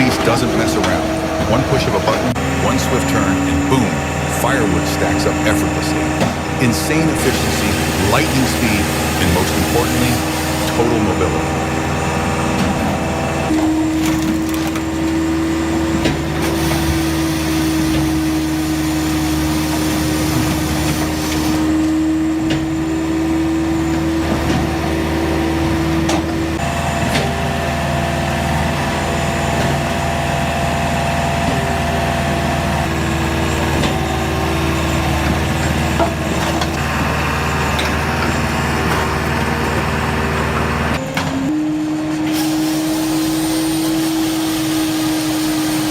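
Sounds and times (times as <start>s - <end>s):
engine and hydraulics droning: 0.0s - 45.9s
wood splitting cracks: 13.8s - 15.0s.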